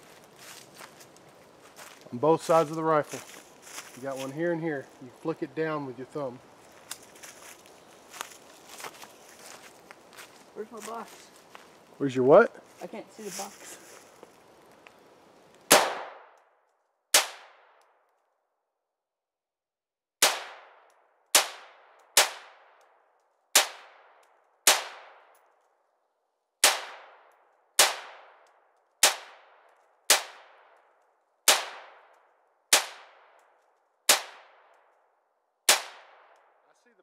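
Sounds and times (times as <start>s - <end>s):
rifle shots with ringing echo: 15.7s - 16.4s, 17.1s - 17.9s, 20.2s - 22.8s, 23.5s - 25.4s, 26.6s - 30.9s, 31.5s - 34.9s, 35.7s - 36.7s.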